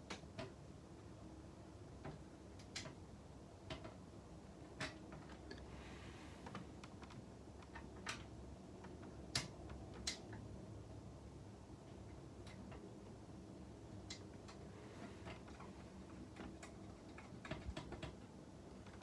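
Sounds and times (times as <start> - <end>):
light clicks and taps: 2.0 - 3.0, 3.6 - 4.0, 4.6 - 5.7, 6.4 - 10.5, 11.9 - 13.2, 13.9 - 19.0.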